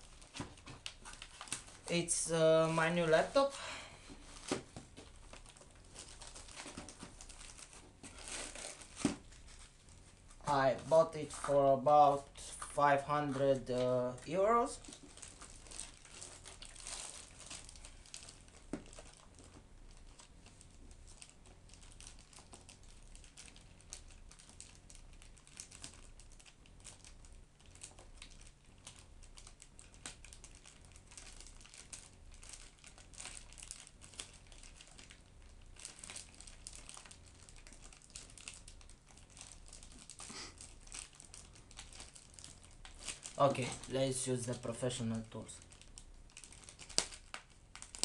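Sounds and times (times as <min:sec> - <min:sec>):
packaging crinkling and rustling: 0:00.0 - 0:48.0.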